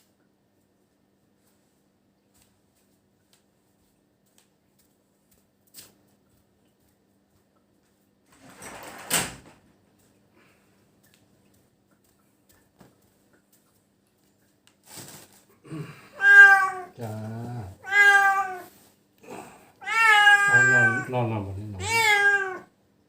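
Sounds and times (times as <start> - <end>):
short rustle: 14.2 - 15.5
cat meowing: 16.1 - 18.8, 19.8 - 22.7.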